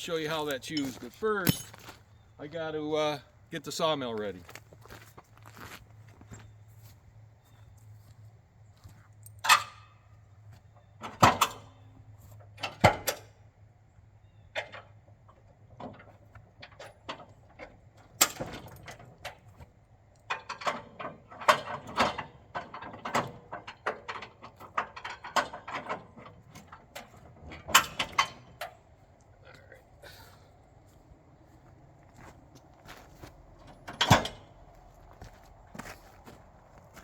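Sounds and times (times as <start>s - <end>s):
sharp knocks and clanks: 0.3s - 2.0s, 20.3s - 28.8s, 33.6s - 36.0s
small rattles and clatters: 14.3s - 30.2s.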